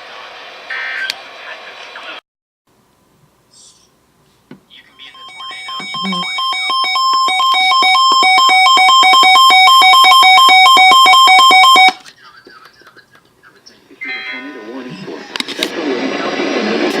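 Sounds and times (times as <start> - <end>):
two-pitch alarm beeping: 4.9 - 12.0.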